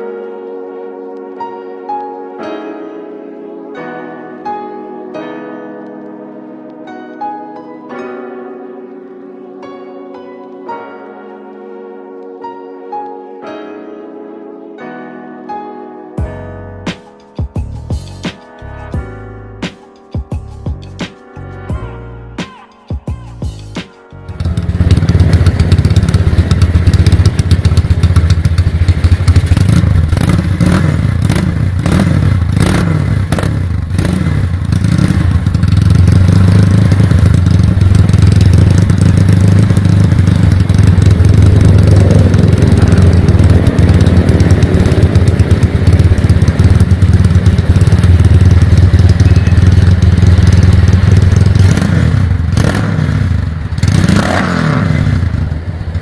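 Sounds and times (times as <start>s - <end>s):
motorcycle engine revving: 23.6s - 56.0s.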